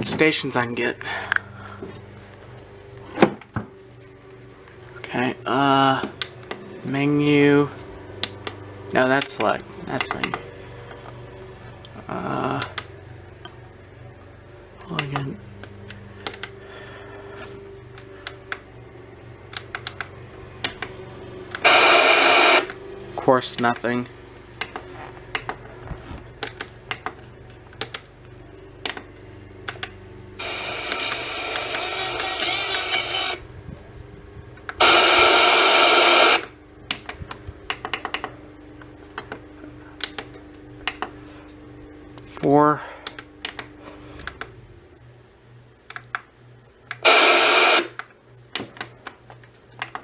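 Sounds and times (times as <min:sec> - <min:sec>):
loud radio static hiss: 0:21.6 - 0:22.7, 0:30.4 - 0:33.5, 0:34.8 - 0:36.6, 0:47.0 - 0:48.0.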